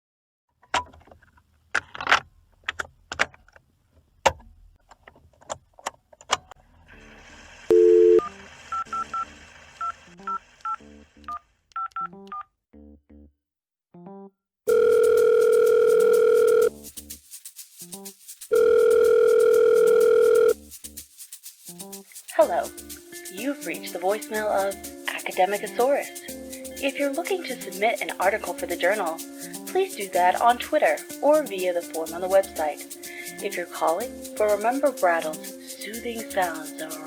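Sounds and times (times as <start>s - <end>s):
keypad beeps: 7.7s - 9.2s, 10.3s - 12.5s
phone ringing tone: 7.7s - 9.2s, 14.7s - 16.7s, 18.5s - 20.6s.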